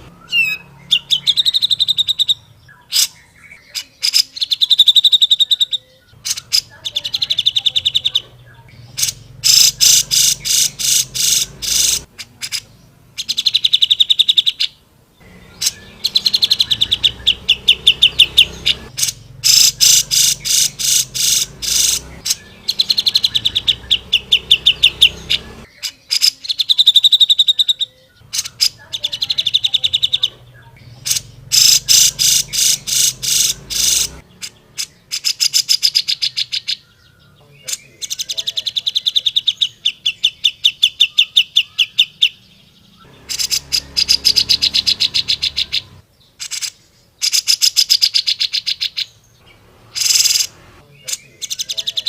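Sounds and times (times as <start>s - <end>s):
bulbul singing rattling notes: 6.2s - 14.6s, 15.2s - 27.3s, 28.2s - 36.7s.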